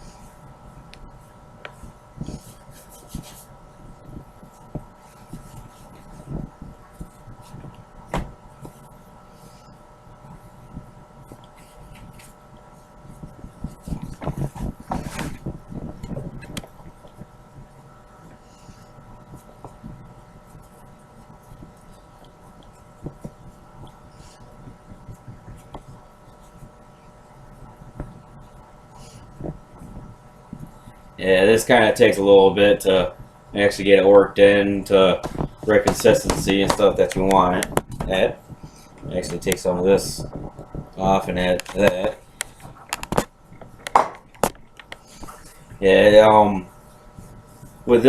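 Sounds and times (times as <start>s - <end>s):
hands working dough: 0.0s - 17.4s, 33.6s - 48.0s
faint steady hum: 0.0s - 48.0s.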